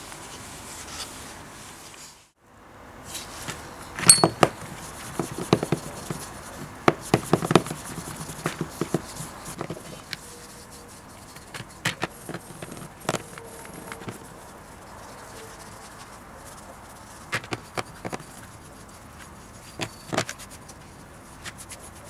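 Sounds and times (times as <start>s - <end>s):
ringing metallic clink: 4.0s - 4.5s
metal tools clinking on workbench: 4.0s - 4.6s.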